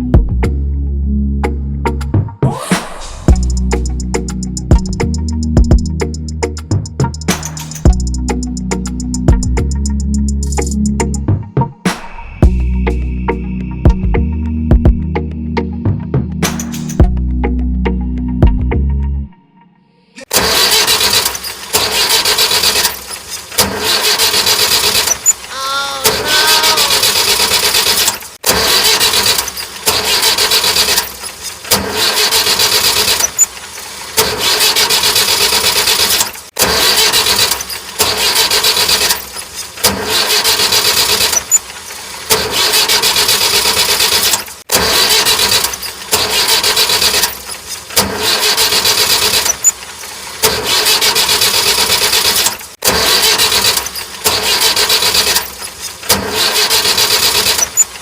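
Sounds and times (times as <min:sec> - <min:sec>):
engine-like running sound: 0:02.4 - 0:11.3.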